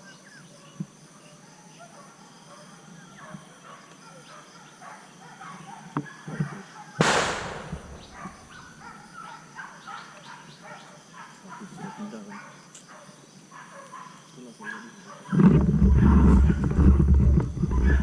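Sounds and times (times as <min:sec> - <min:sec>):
sharp gunshot: 0:07.0 - 0:08.5.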